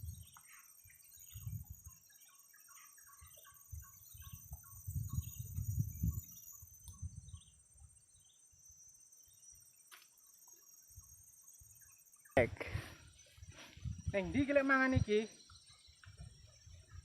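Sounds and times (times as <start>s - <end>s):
insects droning: 0.0s - 17.0s
wind on microphone: 1.3s - 1.9s, 3.7s - 7.6s, 12.4s - 17.0s.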